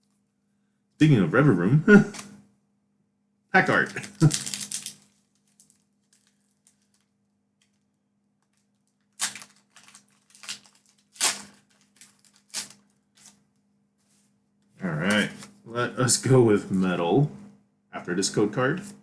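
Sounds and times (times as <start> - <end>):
foil wrapper crinkling and tearing: 3.6 - 7.8, 8.4 - 13.5.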